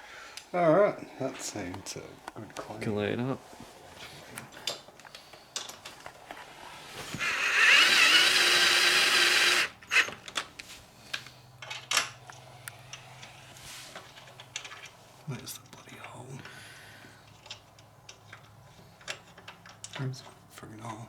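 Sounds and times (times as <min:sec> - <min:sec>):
electric drill whining: 0:07.1 - 0:10.2.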